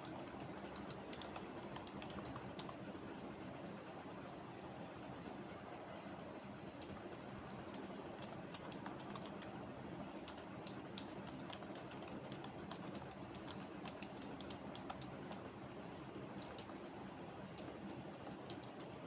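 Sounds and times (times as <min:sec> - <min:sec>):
computer keyboard typing: 0:00.0 - 0:02.8, 0:06.7 - 0:19.0
low background hum: 0:00.0 - 0:19.0.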